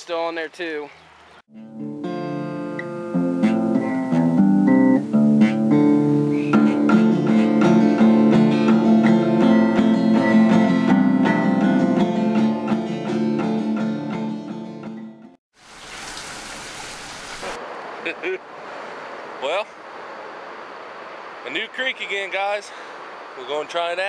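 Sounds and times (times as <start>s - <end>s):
acoustic guitar music: 1.5s - 15.3s.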